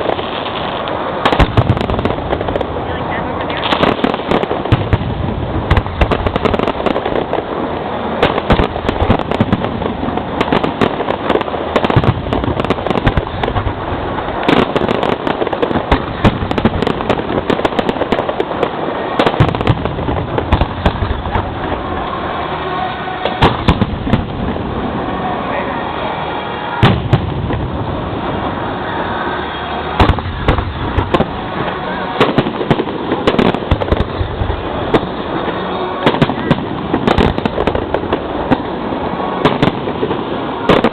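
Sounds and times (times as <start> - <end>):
fireworks bangs and crackling: 0.0 - 40.9.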